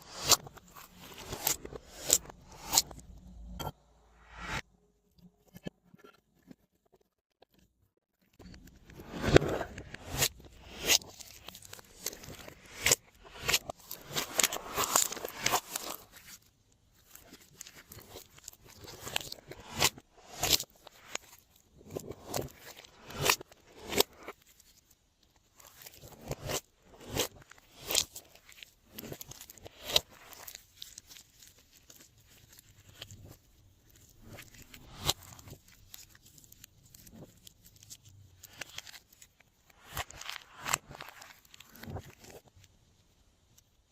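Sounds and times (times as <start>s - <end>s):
slime popping and crackling: 25.4s - 42.5s.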